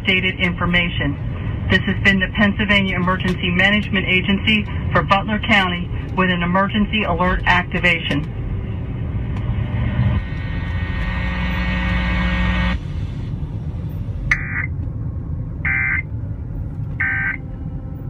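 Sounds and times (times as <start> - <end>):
low rumble of road noise: 0.0 - 18.0
steady buzz: 8.5 - 14.4.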